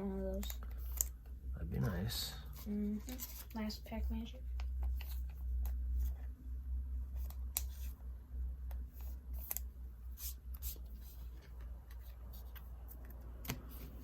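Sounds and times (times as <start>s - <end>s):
steady low hum: 0.0s - 14.0s
cards being handled: 2.5s - 3.8s, 4.5s - 6.3s.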